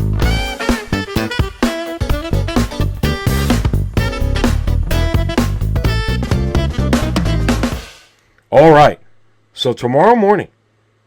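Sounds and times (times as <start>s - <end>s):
guitar: 0.0s - 7.9s
drum kit steady beat: 0.0s - 8.1s
horn lines: 0.2s - 8.0s.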